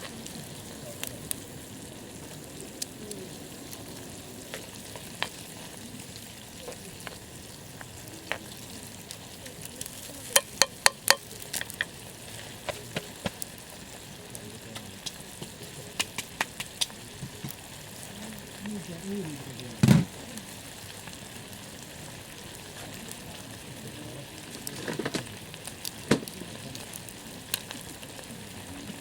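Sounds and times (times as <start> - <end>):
food sizzling in a skillet: 0.0 - 29.0
sharp pops and clicks: 4.5 - 13.6, 14.7 - 17.7, 19.8 - 20.2, 24.6 - 27.8.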